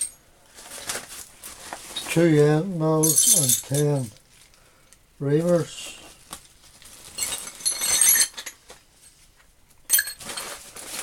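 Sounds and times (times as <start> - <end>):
metal tools clinking: 0.0 - 0.2, 3.0 - 4.2, 7.1 - 8.7, 9.9 - 10.6.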